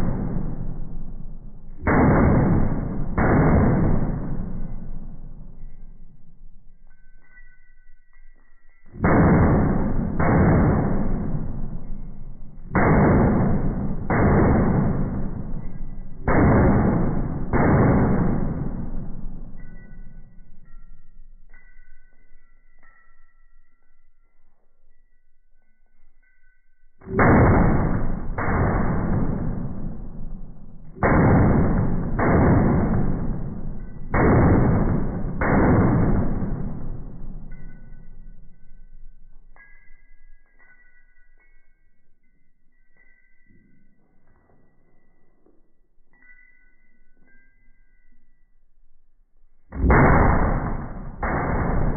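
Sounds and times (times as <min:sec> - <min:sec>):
slow motion rifle shots: 0:00.0 - 0:06.1, 0:08.9 - 0:20.8, 0:27.0 - 0:39.8, 0:49.7 - 0:51.9.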